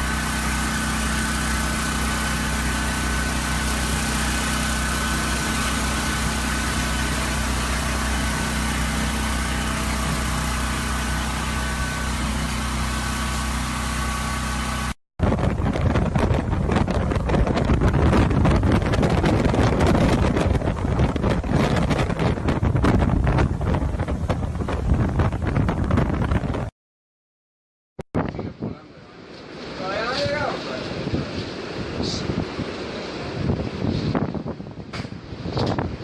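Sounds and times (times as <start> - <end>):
engine running with low hum: 0.0 - 26.7
wind buffeting microphone: 15.2 - 26.7, 30.2 - 36.0.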